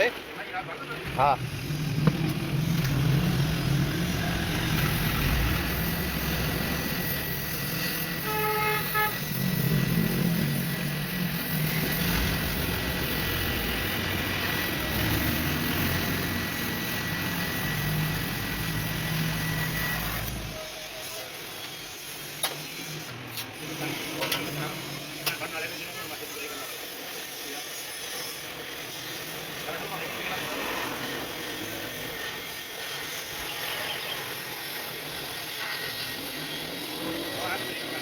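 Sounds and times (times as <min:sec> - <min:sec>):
motorcycle engine running: 0:01.0 - 0:20.6
motorcycle horn toot: 0:08.0 - 0:09.4.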